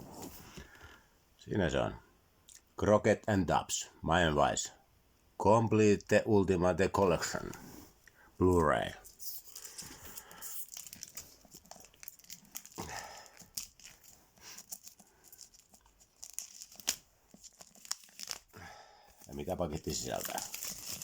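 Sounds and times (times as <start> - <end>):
packaging crinkling and tearing: 9.0 - 21.0.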